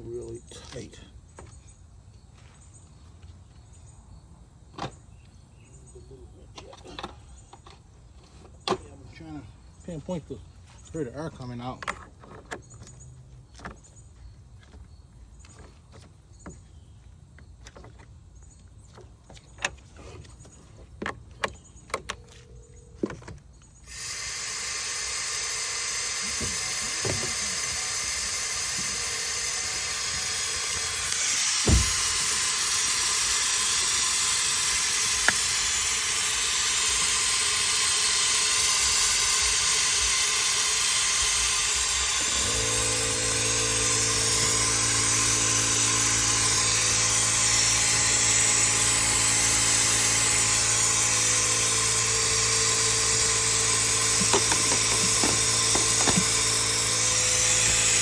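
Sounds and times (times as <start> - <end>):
compressed air hissing: 23.9 - 42.7
handling clicks and knocks: 54.2 - 56.4.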